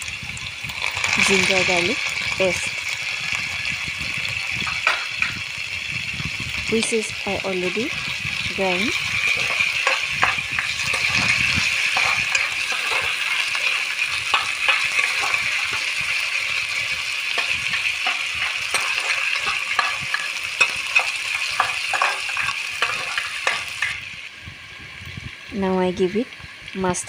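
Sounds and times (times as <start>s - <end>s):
onions sizzling in hot oil: 0.0s - 27.0s
spoon scraping pan: 8.8s - 24.0s.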